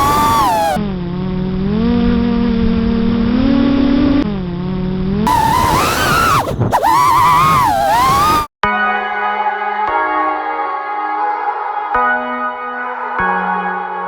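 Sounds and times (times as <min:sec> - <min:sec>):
quadcopter motors whining: 0:00.0 - 0:00.8, 0:05.3 - 0:08.5.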